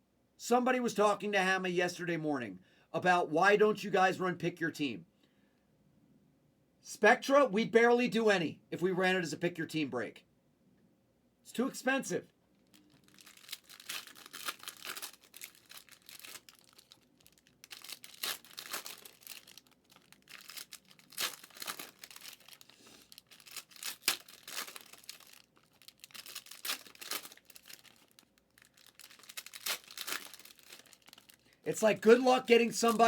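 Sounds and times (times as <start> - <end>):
foil wrappers torn and crinkled: 12.6 - 33.0.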